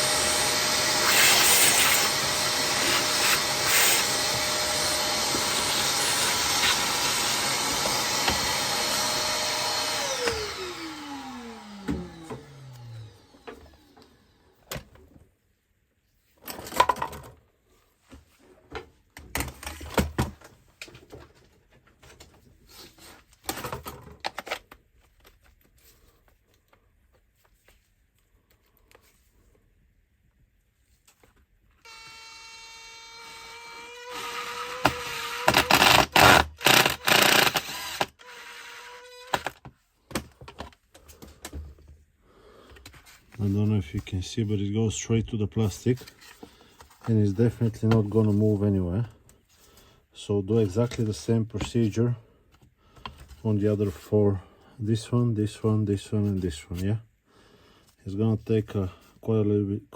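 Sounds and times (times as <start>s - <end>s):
vacuum cleaner motor whine: 0.0s - 14.5s.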